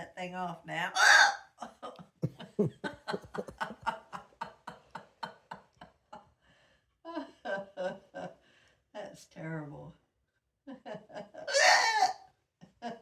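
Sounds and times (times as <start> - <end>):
person laughing in short bursts: 2.2 - 3.7.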